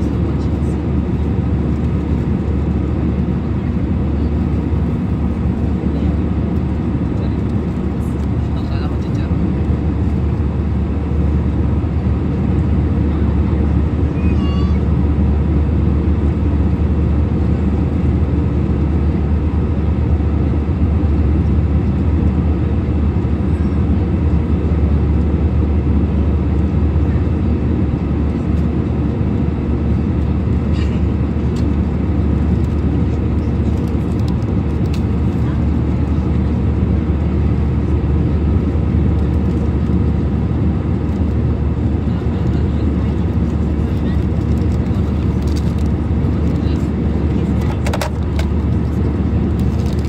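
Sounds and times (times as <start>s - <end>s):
airliner engines and airflow rumble: 0.0s - 50.0s
faint high-pitched cry: 14.1s - 14.9s.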